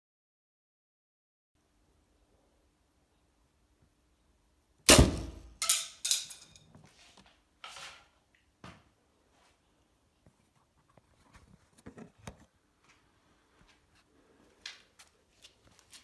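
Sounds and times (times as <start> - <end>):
crossbow shot crack: 4.9 - 5.7.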